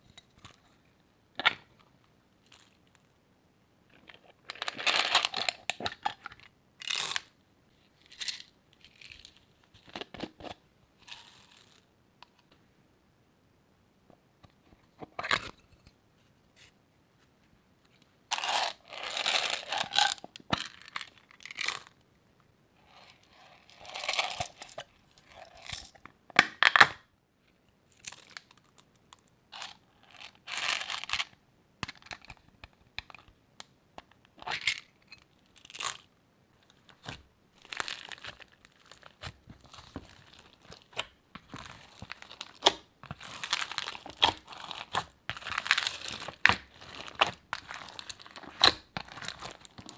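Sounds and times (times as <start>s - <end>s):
crunchy slime crackling: 37.0s - 49.9s.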